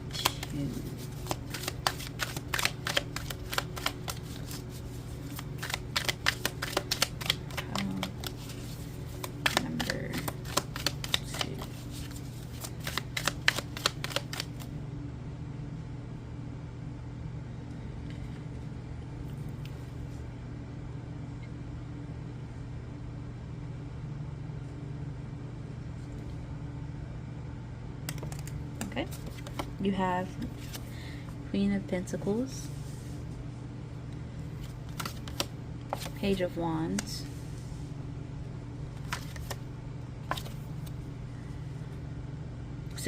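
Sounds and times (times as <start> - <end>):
cards being shuffled: 0.0 - 14.7, 28.1 - 30.9, 34.5 - 37.4, 39.0 - 41.0
steady low hum: 0.0 - 43.0.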